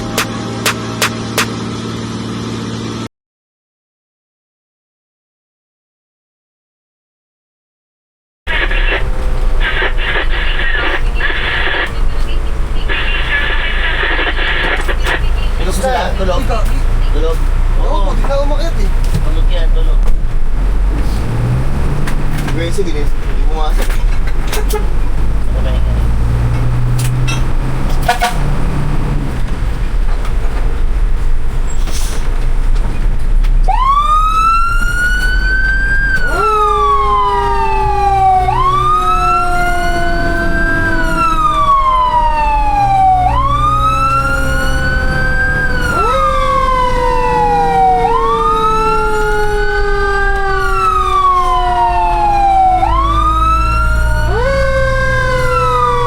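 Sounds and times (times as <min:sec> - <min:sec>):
truck engine rumble: 0:00.0 - 0:03.1, 0:08.5 - 0:56.0
fire truck siren wailing: 0:08.5 - 0:19.8, 0:20.5 - 0:29.8, 0:33.5 - 0:56.0.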